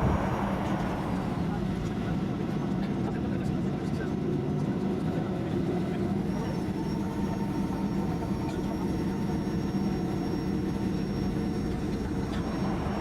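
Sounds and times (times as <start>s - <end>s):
high engine whine: 0.0s - 3.2s, 6.2s - 13.0s
jet engines rumbling: 0.0s - 3.8s, 5.7s - 13.0s.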